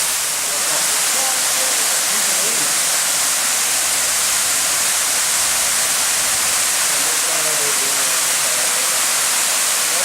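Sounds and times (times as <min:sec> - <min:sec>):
waterfall rushing: 0:00.0 - 0:10.0.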